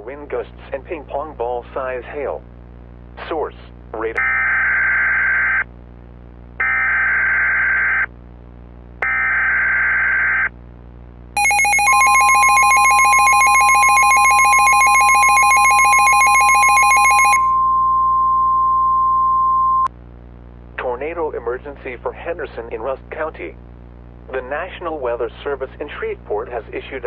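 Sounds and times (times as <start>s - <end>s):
rapidly pulsing alarm tone: 6.6s - 8.1s, 9.0s - 10.5s, 11.4s - 19.9s
steady single tone: 13.2s - 19.9s.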